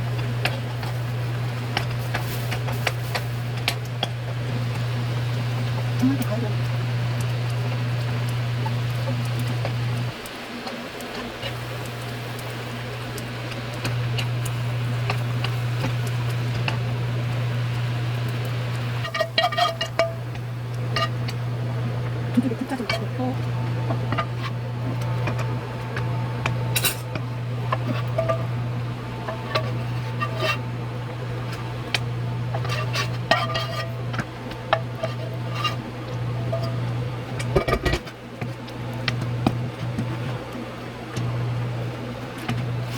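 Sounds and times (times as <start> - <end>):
steady low hum: 10.9 - 42.9
metal utensils clinking against pot: 19.0 - 21.4, 22.3 - 25.5, 26.7 - 28.6, 32.5 - 38.1.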